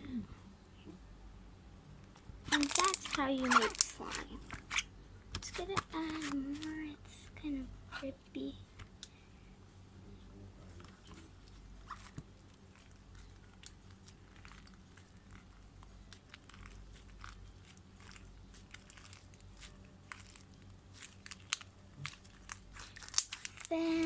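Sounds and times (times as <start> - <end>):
steady low hum: 0.0 - 24.0
sticky clicks and crackles: 2.1 - 6.8, 11.9 - 24.0
slime squeezed by hand: 2.4 - 4.9.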